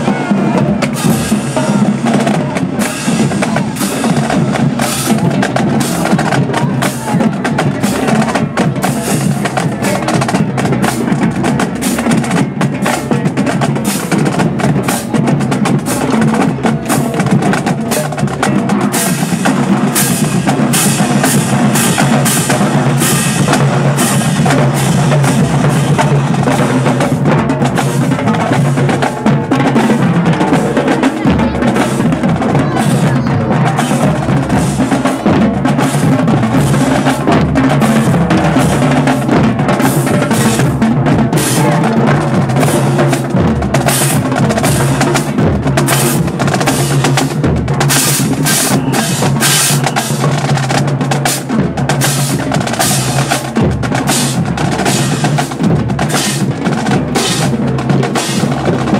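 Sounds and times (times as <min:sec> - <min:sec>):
bass drum beats: 0:00.0 - 0:58.9
snare drum rolls: 0:00.0 - 0:58.9.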